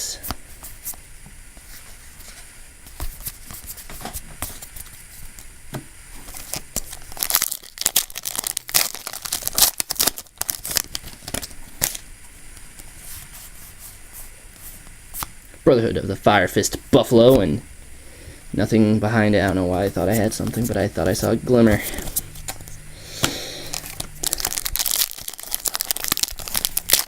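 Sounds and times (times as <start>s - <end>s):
foil card pack tearing and crinkling: 6.2s - 12.0s, 19.7s - 27.0s.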